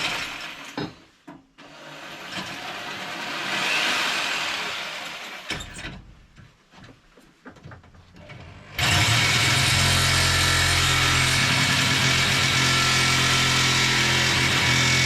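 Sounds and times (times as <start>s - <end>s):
angle grinder cutting metal: 8.8s - 15.0s.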